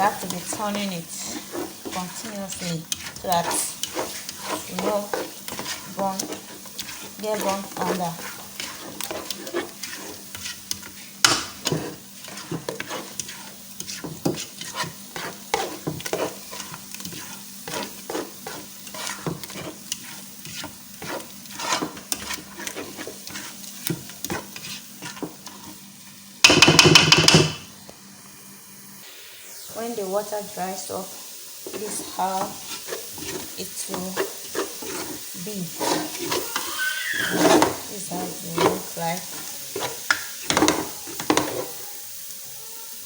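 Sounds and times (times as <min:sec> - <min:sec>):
spoon scraping a pot: 0:00.0 - 0:25.9, 0:31.6 - 0:41.8
faint sizzle: 0:00.0 - 0:26.5, 0:27.4 - 0:43.0.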